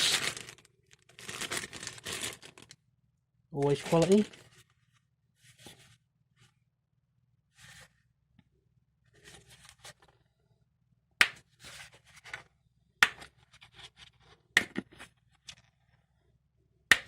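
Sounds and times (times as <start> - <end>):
packaging rustling and scraping: 0.0 - 2.7, 3.6 - 4.8.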